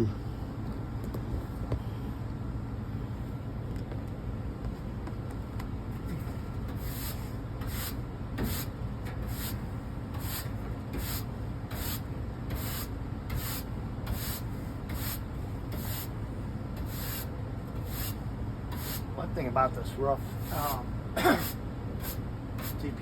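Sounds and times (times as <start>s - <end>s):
hand tool scraping metal fins: 10.2s - 16.1s, 20.4s - 22.9s.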